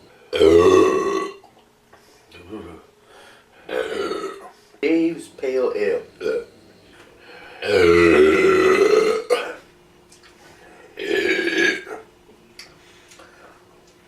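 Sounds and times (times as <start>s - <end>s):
man belching loudly: 0.3s - 1.5s, 3.7s - 4.5s, 6.2s - 6.5s, 7.6s - 9.6s, 11.0s - 12.1s.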